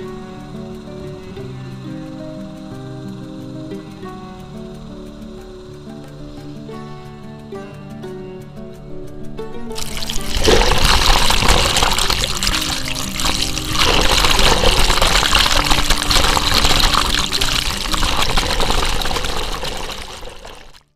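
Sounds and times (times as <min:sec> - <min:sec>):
faint background music: 0:00.0 - 0:20.2
water rushing: 0:09.8 - 0:20.9.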